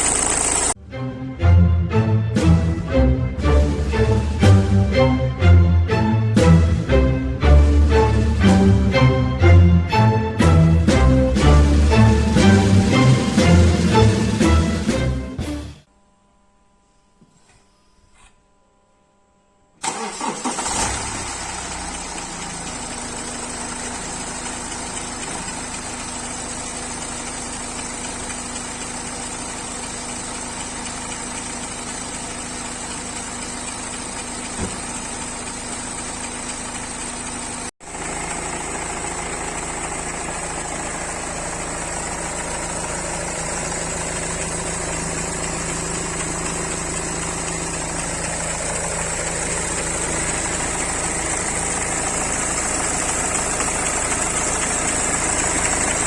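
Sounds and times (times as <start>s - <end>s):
engine knocking: 0.0s - 0.8s, 20.0s - 56.0s
car engine starting and idling: 0.0s - 15.4s, 19.8s - 56.0s.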